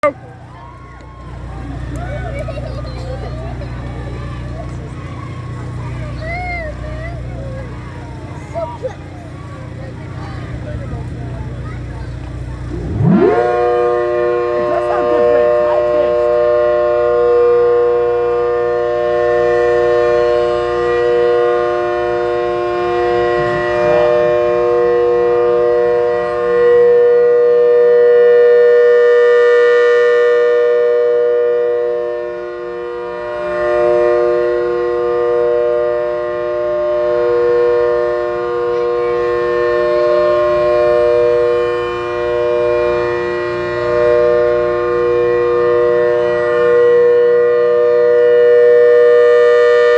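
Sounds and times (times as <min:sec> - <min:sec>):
siren holding a chord: 0:12.5 - 0:49.9.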